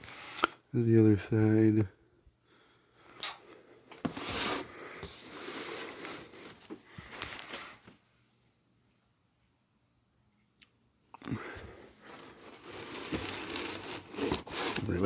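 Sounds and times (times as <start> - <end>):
cardboard scraping rustle: 4.0 - 7.8, 12.0 - 15.0.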